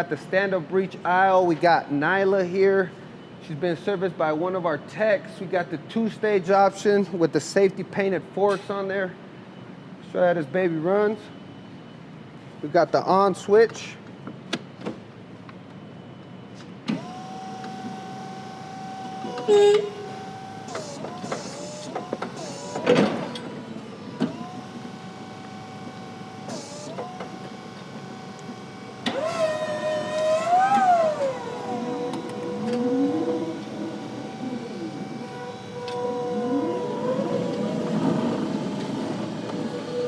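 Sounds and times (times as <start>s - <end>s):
electric motors whining: 16.9s - 40.0s.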